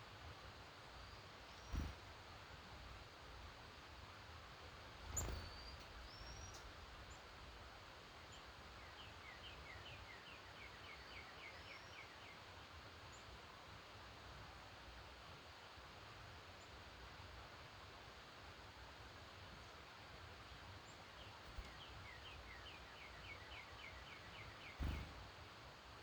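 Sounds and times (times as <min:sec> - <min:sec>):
birdsong: 0:00.7 - 0:02.5, 0:04.8 - 0:12.5, 0:20.6 - 0:25.7.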